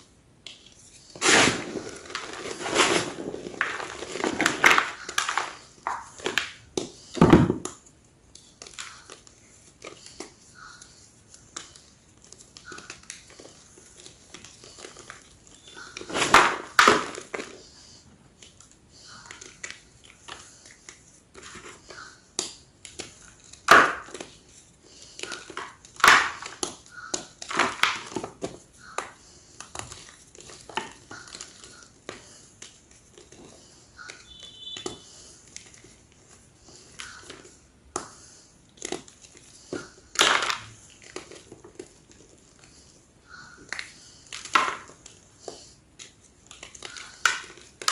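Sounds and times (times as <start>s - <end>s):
crumbling crackles: 1.1s - 6.6s.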